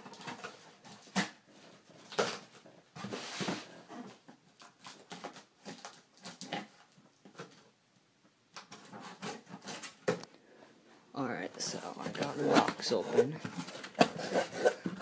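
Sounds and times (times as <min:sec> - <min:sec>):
cardboard box rustling and scraping: 0:00.0 - 0:04.2, 0:11.6 - 0:15.0
cardboard tearing: 0:11.7 - 0:15.0.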